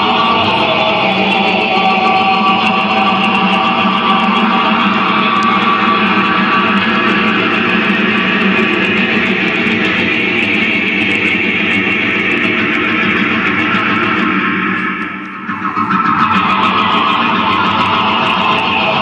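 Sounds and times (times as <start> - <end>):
distorted noise music: 0.0 - 19.0
droning tones: 0.0 - 19.0.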